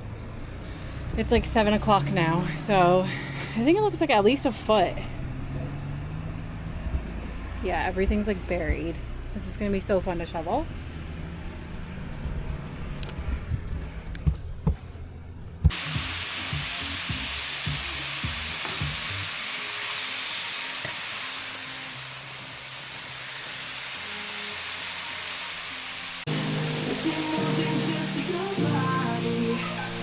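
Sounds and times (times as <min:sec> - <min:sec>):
low rumbling: 0:00.0 - 0:15.7
food sizzling in a frying pan: 0:15.7 - 0:30.0.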